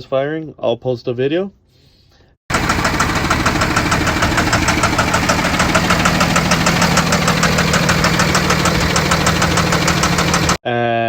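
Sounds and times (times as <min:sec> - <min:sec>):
diesel engine knocking: 0:02.5 - 0:10.6.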